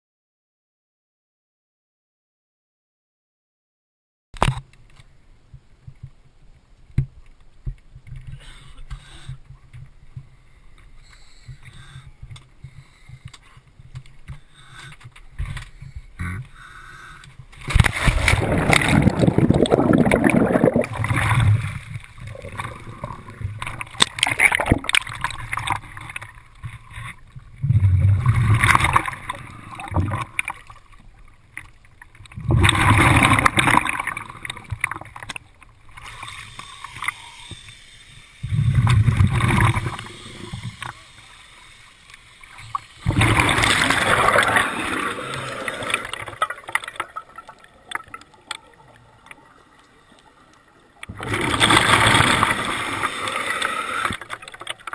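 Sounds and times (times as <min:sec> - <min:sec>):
underwater water noise: 0:04.4 - 0:54.9
scuba exhale bubbles gurgling: 0:17.8 - 0:26.3, 0:27.5 - 0:30.8, 0:32.3 - 0:35.2, 0:38.4 - 0:41.2, 0:42.5 - 0:49.8, 0:51.0 - 0:54.9.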